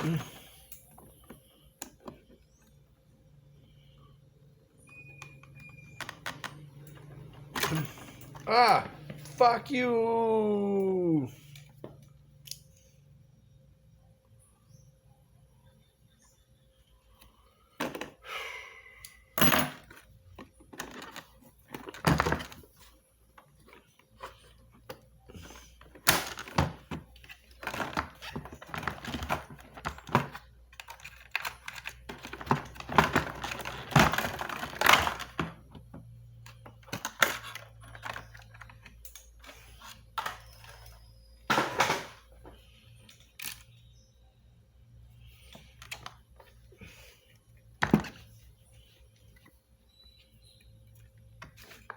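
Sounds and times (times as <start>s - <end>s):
tools and parts clicking and rattling: 0.0s - 2.4s, 5.1s - 9.4s, 19.0s - 43.9s.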